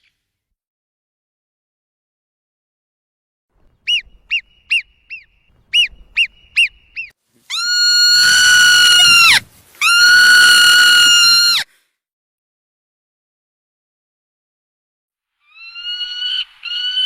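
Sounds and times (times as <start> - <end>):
short high animal calls: 3.8 - 11.6
long high-pitched animal calls: 5.8 - 11.7, 15.4 - 17.0.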